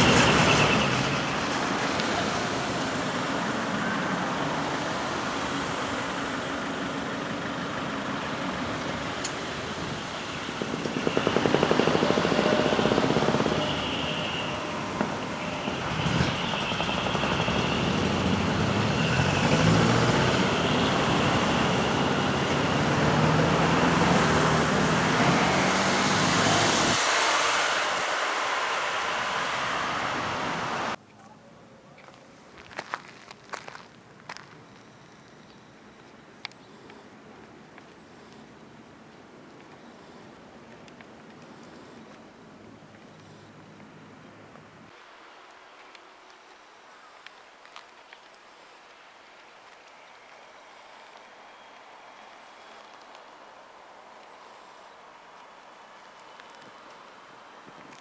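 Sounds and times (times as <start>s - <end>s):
diesel trucks driving past: 0.0s - 31.0s.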